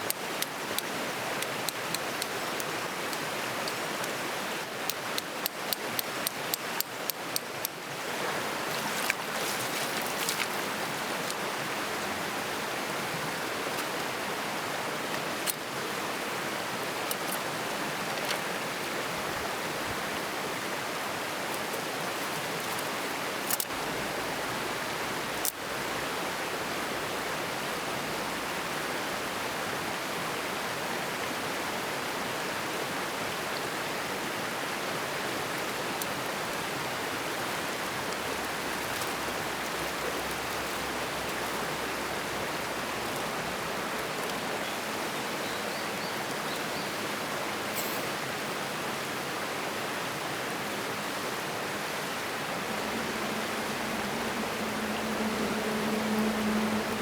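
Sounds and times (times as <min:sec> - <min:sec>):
sharp clicks: 0:00.0 - 0:02.8
stream rushing: 0:00.0 - 0:57.0.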